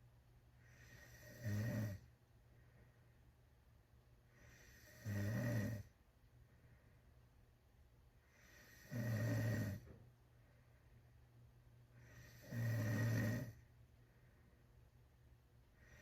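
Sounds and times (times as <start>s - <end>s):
loud buzzing snores: 0.6s - 2.1s, 4.4s - 5.9s, 8.3s - 9.9s, 12.0s - 13.6s
soft breath: 2.3s - 3.6s, 6.3s - 7.5s, 9.8s - 12.5s, 13.5s - 15.0s, 15.6s - 16.0s.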